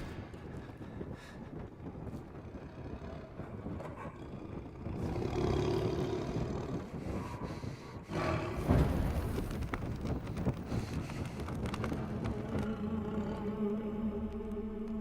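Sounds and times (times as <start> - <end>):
lions roaring: 2.4 - 7.0.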